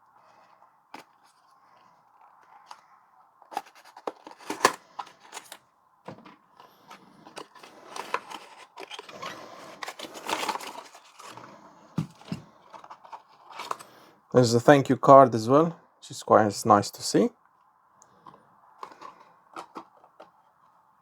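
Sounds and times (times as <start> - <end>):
cardboard box being opened: 3.5 - 6.4, 7.2 - 11.4
packaging rustling: 3.5 - 13.9, 18.8 - 20.3.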